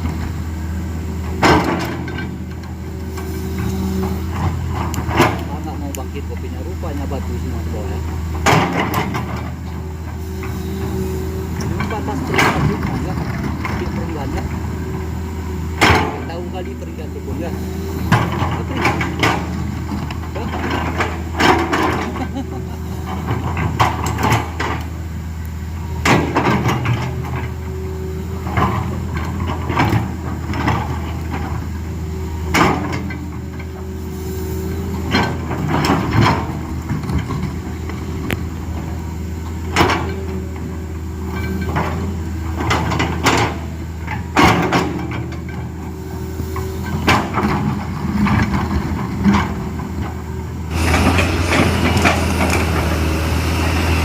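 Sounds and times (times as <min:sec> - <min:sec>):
excavator diesel engine running: 0:00.0 - 0:54.0
bucket clanking and scraping rock: 0:50.7 - 0:53.1.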